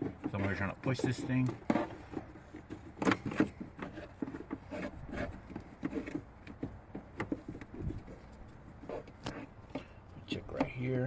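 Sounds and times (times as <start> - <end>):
hand pump rubbing and scraping: 0.0 - 11.0
plastic clicks and knocks: 5.5 - 8.2.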